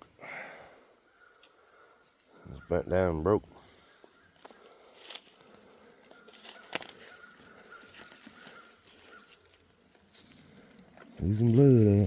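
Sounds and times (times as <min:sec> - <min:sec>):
high insect drone: 0:00.0 - 0:12.0
twigs snapping underfoot: 0:04.4 - 0:10.9.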